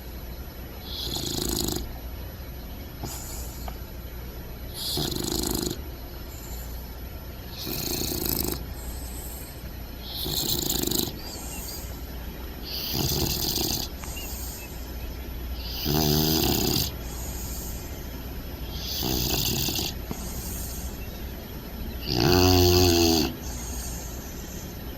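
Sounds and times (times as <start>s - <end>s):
puppy snoring: 0.8s - 2.0s, 3.0s - 3.9s, 4.7s - 15.0s, 15.6s - 21.2s, 22.0s - 24.9s.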